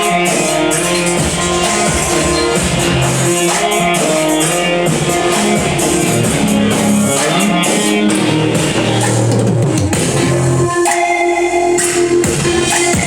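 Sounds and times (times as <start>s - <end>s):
rock music with guitar and drums: 0.0s - 10.4s.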